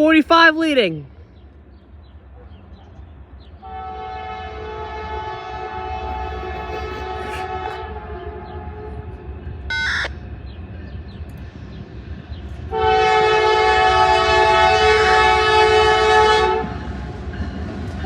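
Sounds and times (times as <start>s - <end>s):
locomotive air horn chord: 3.6s - 6.2s, 12.7s - 16.8s.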